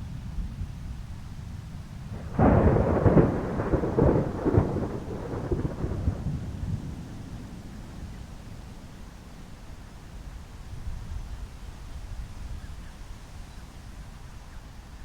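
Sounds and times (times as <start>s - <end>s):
low thunder rumble: 0.0s - 10.3s
thunderclap: 2.0s - 8.2s.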